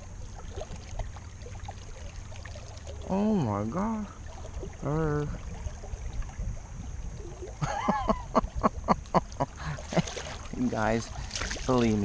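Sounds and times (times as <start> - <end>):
river water rumbling: 0.0 - 12.0
man laughing: 7.6 - 10.2.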